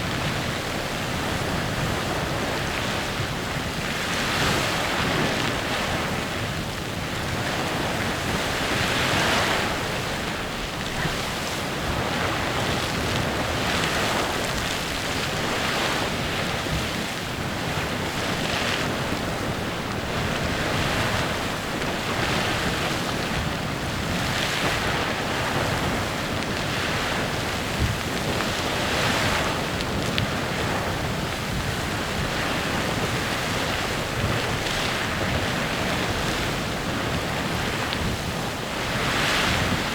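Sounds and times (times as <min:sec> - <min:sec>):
geyser steam hissing: 0:00.0 - 0:39.9.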